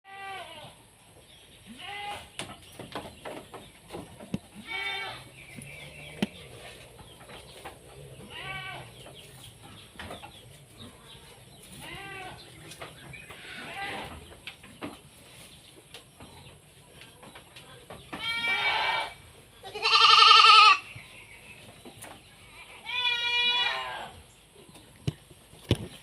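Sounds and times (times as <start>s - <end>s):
goats bleating: 4.6s - 5.3s, 8.1s - 9.0s, 11.8s - 12.5s, 13.4s - 14.2s, 18.2s - 20.9s, 22.6s - 24.2s.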